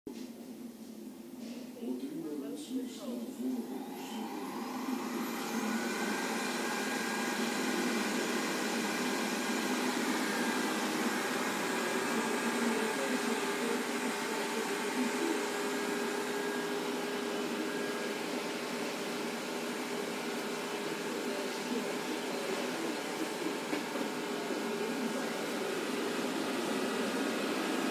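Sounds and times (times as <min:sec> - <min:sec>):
robot vacuum motor hum: 0:03.6 - 0:27.9.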